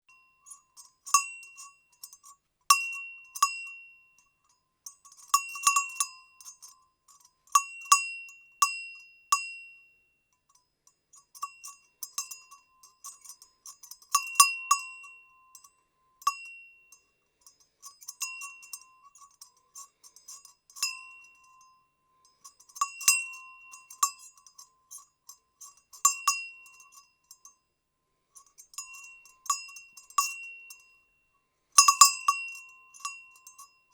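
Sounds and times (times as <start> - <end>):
goat bell clanking: 4.9 - 8.1, 11.3 - 15.7, 17.8 - 27.6, 28.4 - 30.9, 31.8 - 33.9.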